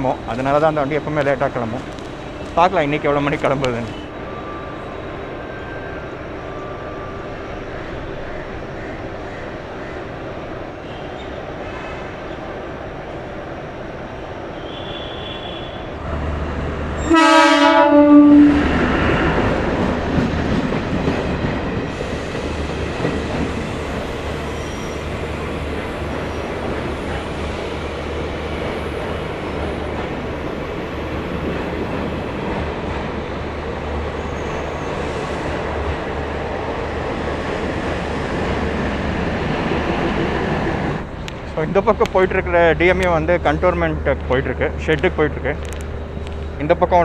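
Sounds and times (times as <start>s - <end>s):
train rumbling past on rails: 0.0s - 47.0s
train horn blast: 14.6s - 15.9s, 17.0s - 18.8s.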